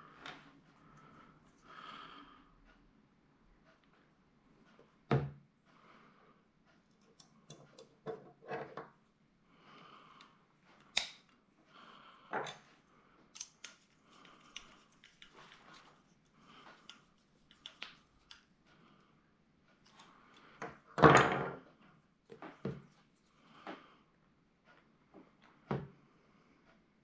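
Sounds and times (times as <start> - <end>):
light clicks and knocks of tools: 6.7 - 9.0, 12.4 - 19.0, 19.7 - 20.9.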